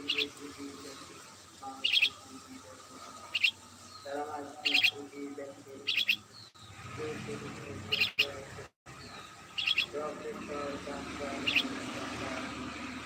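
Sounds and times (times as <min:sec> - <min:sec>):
lower-pitched bird calls: 0:00.0 - 0:06.8, 0:07.8 - 0:10.2, 0:11.3 - 0:11.9
small bird chirping: 0:00.0 - 0:12.0.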